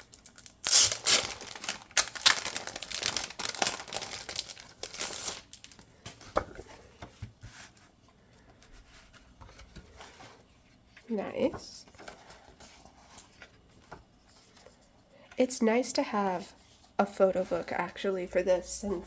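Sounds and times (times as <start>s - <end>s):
wrapping tearing and crumpling: 0.0s - 5.9s.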